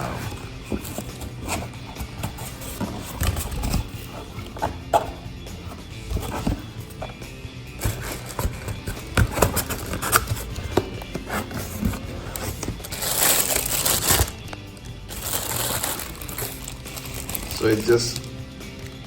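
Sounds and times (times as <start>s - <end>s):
cardboard packaging knocks and scrapes: 0.0s - 7.2s, 7.8s - 14.3s
cardboard rustling slide: 0.0s - 7.2s, 7.8s - 14.3s
quiet background music: 0.0s - 19.0s.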